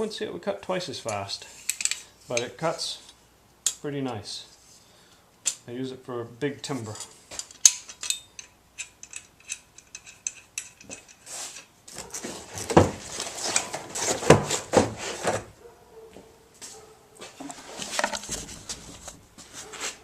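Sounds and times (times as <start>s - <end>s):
light metallic clicks and clinks: 6.9s - 11.2s
rough scraping rustling strokes: 11.2s - 15.4s, 17.3s - 20.0s.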